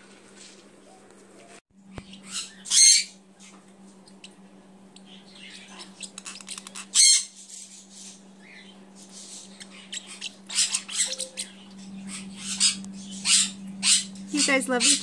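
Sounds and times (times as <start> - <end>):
parrotlets chirping: 1.9 - 15.0
harsh parrot squawk: 9.8 - 15.0.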